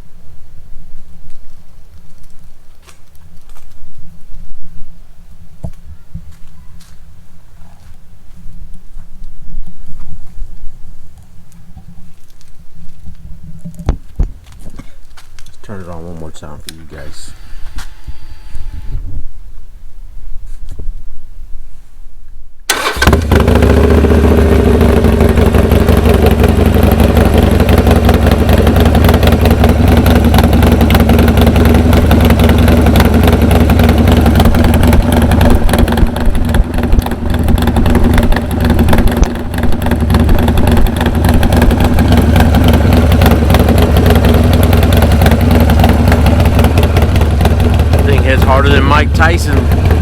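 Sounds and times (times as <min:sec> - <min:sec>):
motorcycle engine starting and idling: 0:14.8 - 0:19.0, 0:22.7 - 0:50.0.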